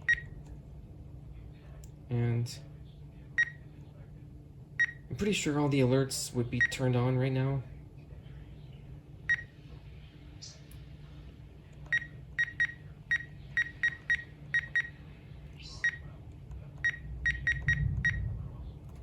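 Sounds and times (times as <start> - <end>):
steady low hum: 0.0 - 19.0
radio keypress beeps: 11.9 - 14.9, 16.8 - 18.2.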